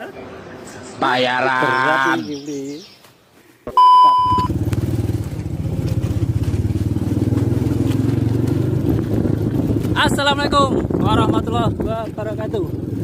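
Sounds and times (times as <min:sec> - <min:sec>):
small motorcycle engine running: 0:04.4 - 0:13.0.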